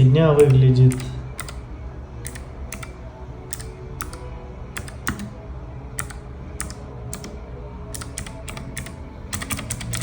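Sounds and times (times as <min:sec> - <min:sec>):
clicky mechanical keyboard keystrokes: 0:00.4 - 0:01.6, 0:02.2 - 0:02.9, 0:04.8 - 0:05.3, 0:07.9 - 0:10.0.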